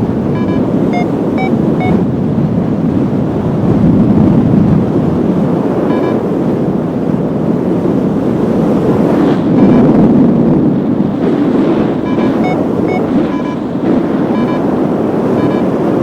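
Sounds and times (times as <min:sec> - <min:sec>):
strong wind rushing over microphone: 0:00.0 - 0:16.0
short beeps: 0:00.3 - 0:02.0, 0:05.9 - 0:06.2, 0:12.0 - 0:14.7, 0:15.3 - 0:15.8.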